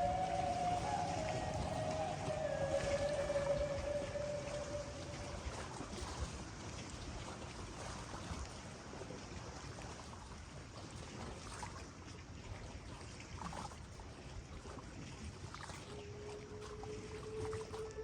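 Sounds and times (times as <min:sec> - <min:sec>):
steam whistle: 0:00.0 - 0:05.9, 0:15.8 - 0:18.0
water rushing and trickling: 0:00.0 - 0:18.0.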